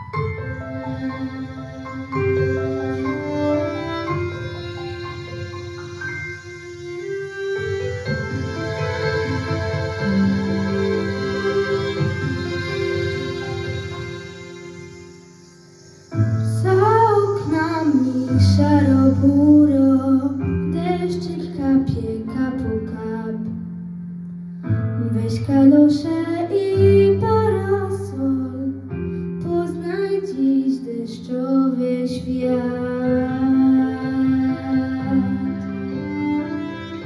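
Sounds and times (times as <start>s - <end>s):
instrumental accompaniment: 0.0s - 31.0s, 31.8s - 37.0s
woman singing slow melody: 16.4s - 23.6s, 25.0s - 35.6s.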